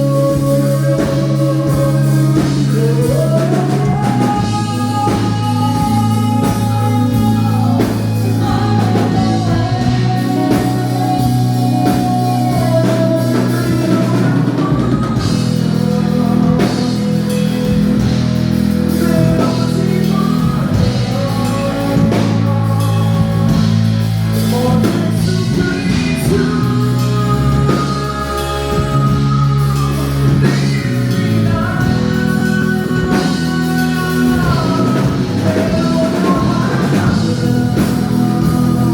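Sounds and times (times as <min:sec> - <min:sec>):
live rock band playing: 0:00.0 - 0:38.9.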